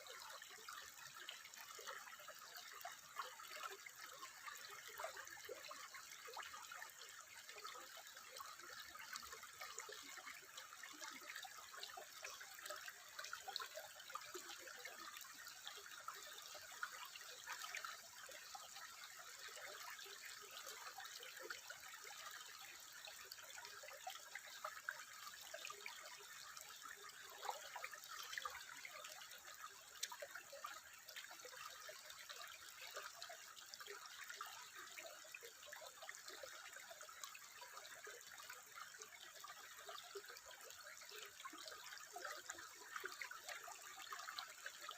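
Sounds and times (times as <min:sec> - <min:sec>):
water trickling: 0:00.0 - 0:44.9.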